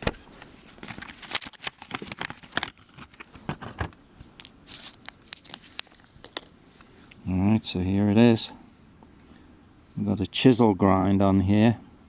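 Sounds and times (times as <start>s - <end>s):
packaging tearing and crinkling: 0.0s - 6.5s.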